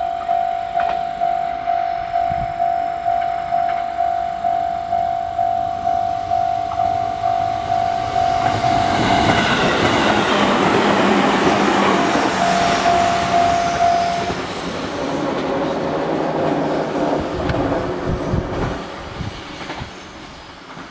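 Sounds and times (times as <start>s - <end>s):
level-crossing warning bell ringing: 0.0s - 14.7s
passing electric train: 0.0s - 20.9s.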